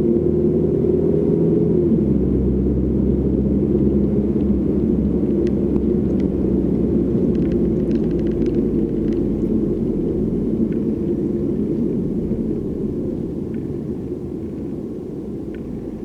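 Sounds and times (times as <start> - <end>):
low rumble: 0.0 - 16.0
faint clicks: 7.3 - 9.5.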